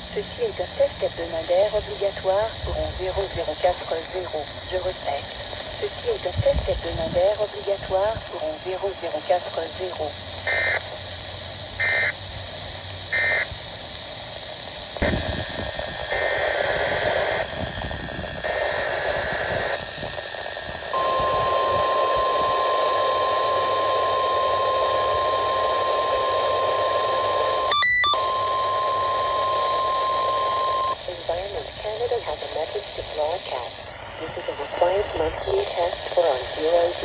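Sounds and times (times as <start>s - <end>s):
radio hiss: 0.0s - 37.0s
radio click: 3.3s - 5.1s, 31.2s - 37.0s
data bursts: 18.3s - 37.0s
steady single-pitch alert tone: 20.9s - 26.3s, 27.6s - 31.0s.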